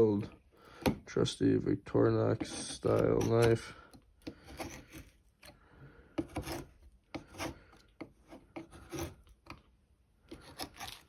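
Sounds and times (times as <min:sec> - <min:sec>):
knife blade scraping material: 0:02.4 - 0:05.6, 0:06.2 - 0:09.3, 0:10.3 - 0:11.0.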